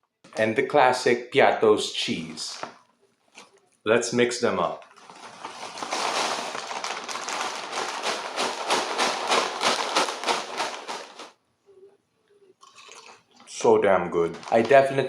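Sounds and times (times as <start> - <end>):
chips shaken in snack bag: 5.0 - 11.3, 14.3 - 15.0.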